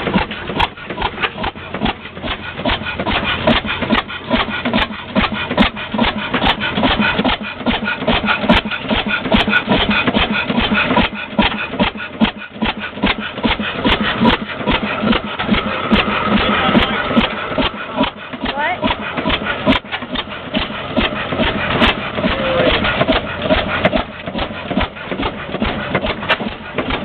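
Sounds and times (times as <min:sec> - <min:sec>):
oilfield engine running: 0:00.0 - 0:27.0.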